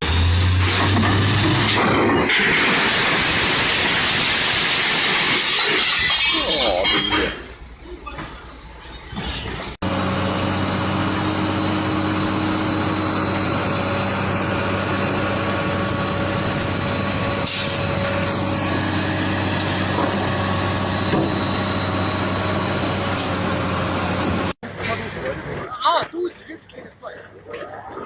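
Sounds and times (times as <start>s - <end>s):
heavy machine engine running: 9.8s - 25.5s.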